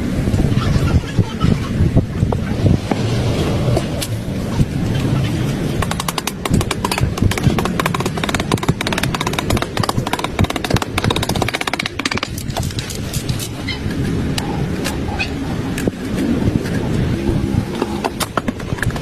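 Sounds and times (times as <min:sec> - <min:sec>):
sharp clicks and knocks: 0:05.8 - 0:13.6.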